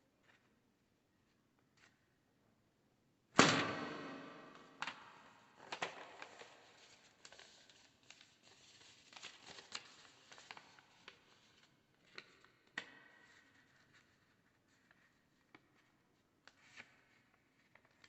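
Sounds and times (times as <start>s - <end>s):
paper popper crack: 3.4s - 6.7s
paper rustling: 5.3s - 18.0s.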